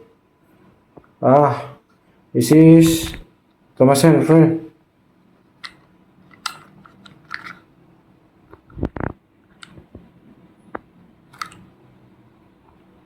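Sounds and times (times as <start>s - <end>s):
plastic toys clicking and crinkling: 5.6s - 7.7s, 11.3s - 11.7s.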